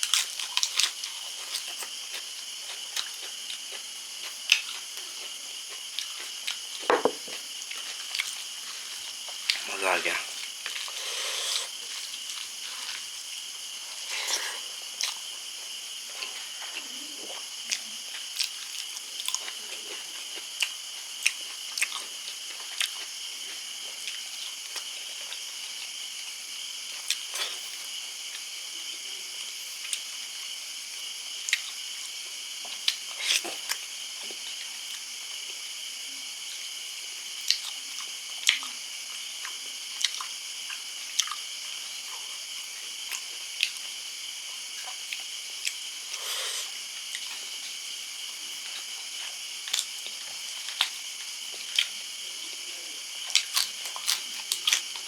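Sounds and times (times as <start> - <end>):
person chewing and biting: 0.0 - 8.5, 39.4 - 41.4, 53.2 - 55.0
steady high-pitched hiss: 0.0 - 55.0.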